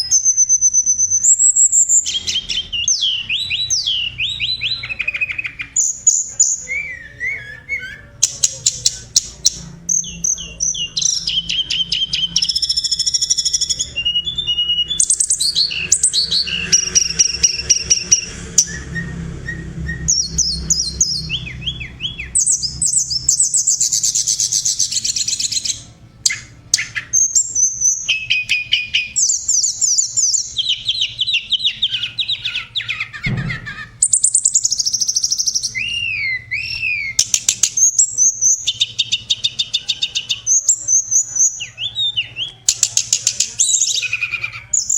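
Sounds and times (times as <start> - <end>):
songbird singing: 0.0 - 44.9
dull thump: 33.3 - 33.8.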